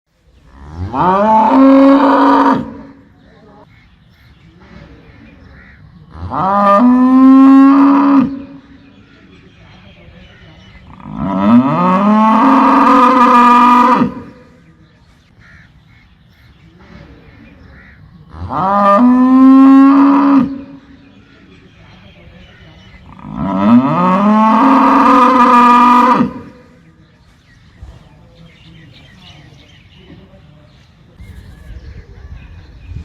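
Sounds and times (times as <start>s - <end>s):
cow mooing: 0.5s - 2.9s, 6.1s - 8.6s, 10.9s - 14.3s, 23.1s - 26.5s.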